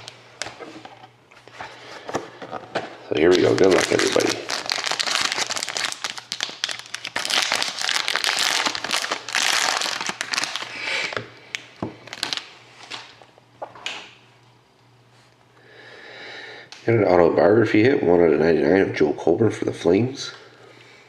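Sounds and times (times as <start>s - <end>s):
plastic packaging crinkling and tearing: 0.0s - 0.6s, 3.1s - 13.2s.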